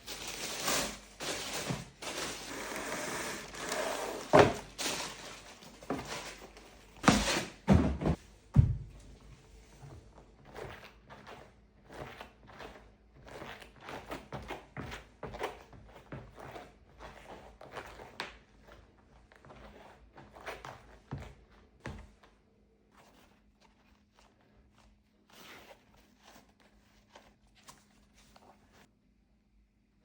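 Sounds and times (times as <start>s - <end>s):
shoebox rustling and knocks: 4.2s - 9.0s.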